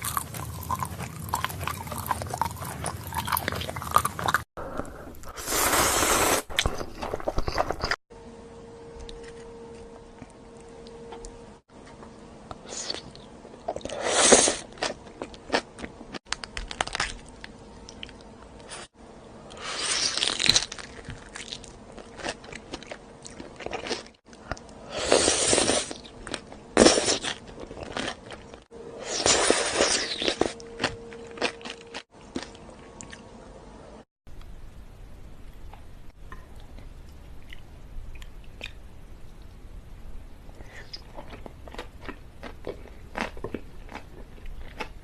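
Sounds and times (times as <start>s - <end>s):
crunchy chewing of food: 0.0s - 8.0s, 12.6s - 18.9s, 19.5s - 33.3s, 40.5s - 45.0s
faint steady hum: 0.0s - 45.0s.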